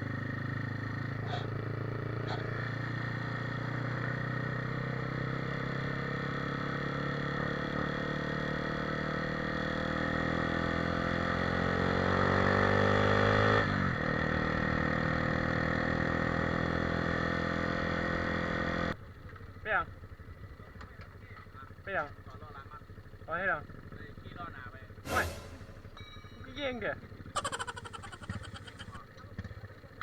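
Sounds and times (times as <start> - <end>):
motorcycle engine accelerating: 0.0 - 19.0, 24.9 - 26.2, 27.0 - 29.0.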